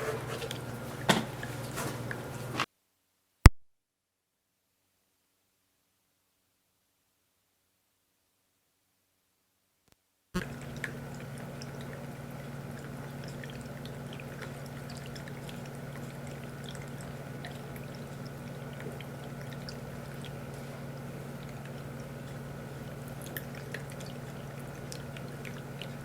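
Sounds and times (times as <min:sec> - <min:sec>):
pump hum: 0:00.0 - 0:02.6, 0:10.4 - 0:26.0
water trickling and dripping: 0:10.4 - 0:26.0.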